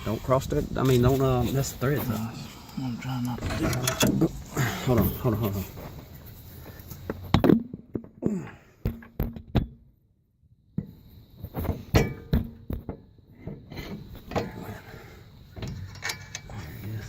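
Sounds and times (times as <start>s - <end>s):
metal tools knocking and clinking: 15.6s - 16.6s.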